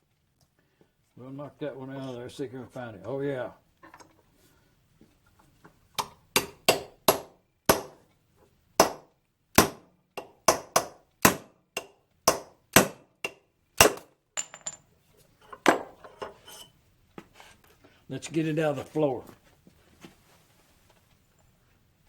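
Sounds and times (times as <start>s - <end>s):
hammer striking metal punch: 6.0s - 8.0s, 8.8s - 14.1s.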